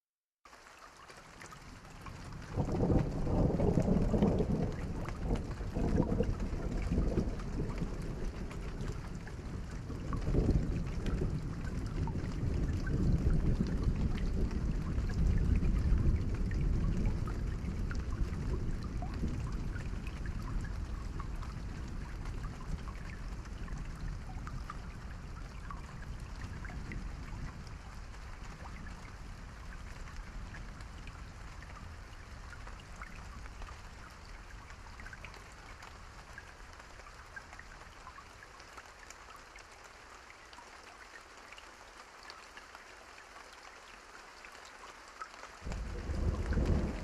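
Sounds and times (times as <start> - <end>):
raindrop ticks: 0.5 - 47.0
steady rain: 0.5 - 47.0
low thunder rumble: 2.0 - 34.0, 45.6 - 47.0
loud thunder peal: 45.7 - 47.0.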